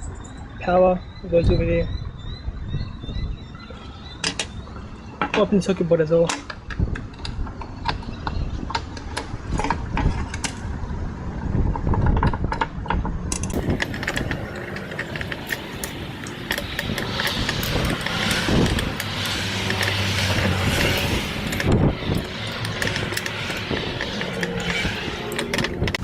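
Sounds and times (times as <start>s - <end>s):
road traffic: 0.0s - 26.0s.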